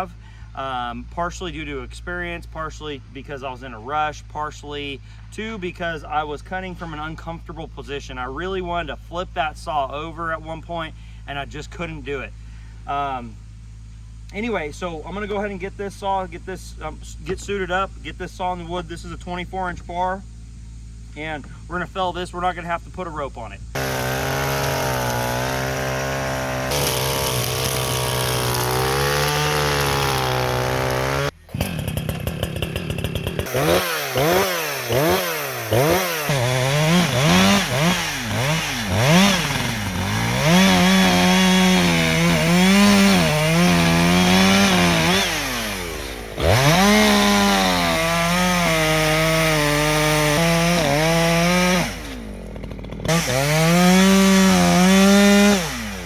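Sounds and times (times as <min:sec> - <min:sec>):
two-stroke chainsaw revving: 0:23.7 - 0:56.0.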